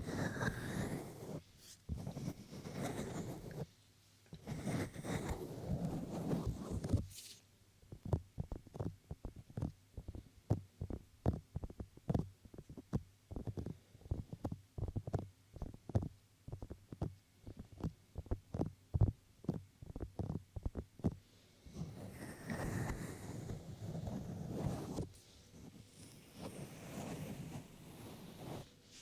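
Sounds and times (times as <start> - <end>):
fingertips tapping microphone: 7.9 - 25.0.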